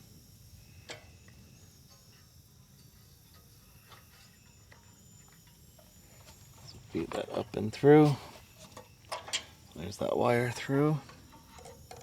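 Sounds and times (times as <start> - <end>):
faint clicks of small parts: 11.0 - 12.0.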